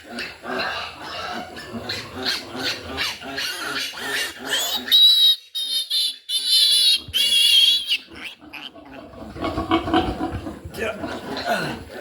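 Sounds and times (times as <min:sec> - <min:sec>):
piglet squealing: 0:02.2 - 0:09.6.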